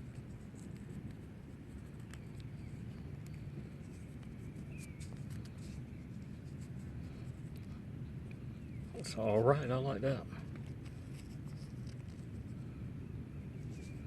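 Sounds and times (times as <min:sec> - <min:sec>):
faint scratching: 0:00.0 - 0:07.9, 0:08.8 - 0:12.8, 0:13.6 - 0:14.0
low steady rumble: 0:00.0 - 0:14.0.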